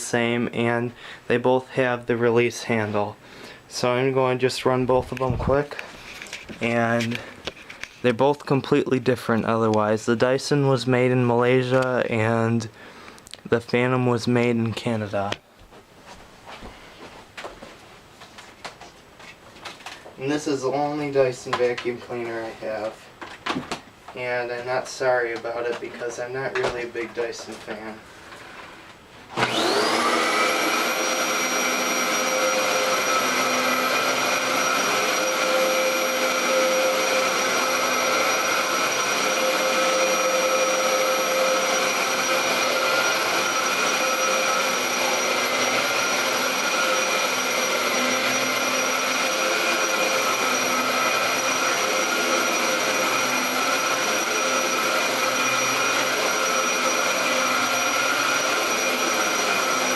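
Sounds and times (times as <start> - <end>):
vacuum cleaner running: 29.3 - 59.9.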